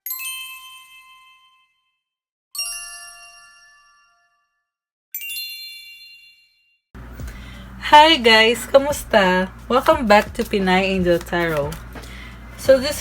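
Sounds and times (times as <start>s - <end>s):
bell-like chime: 0.0s - 2.0s, 2.6s - 6.8s.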